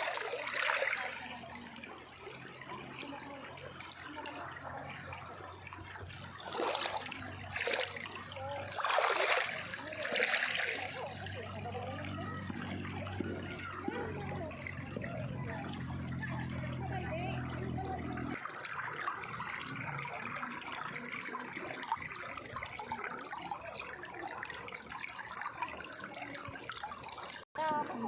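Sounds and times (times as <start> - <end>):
river water rushing: 6.4 - 11.3.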